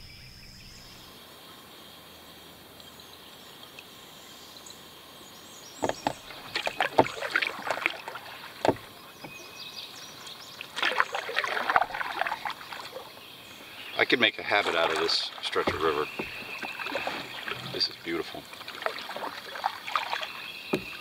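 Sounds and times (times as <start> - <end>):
paddle knocks: 5.8 - 9.5, 14.6 - 21.0
paddle splashing in water: 5.8 - 21.0.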